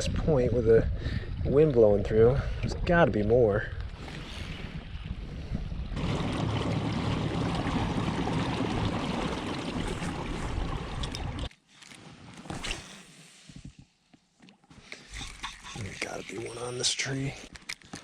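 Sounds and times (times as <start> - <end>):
wind rushing over microphone: 0.0 - 11.5
water sounds from kayak: 1.0 - 11.5, 14.6 - 16.6.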